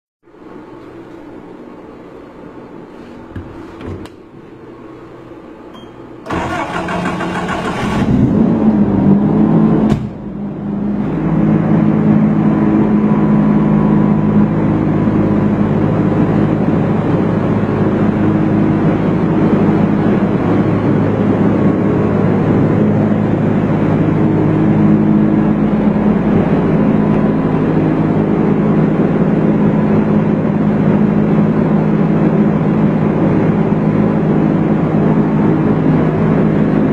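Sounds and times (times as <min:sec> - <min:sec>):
generator engine running: 0:03.2 - 0:36.9
engine starter cranking: 0:06.2 - 0:08.3.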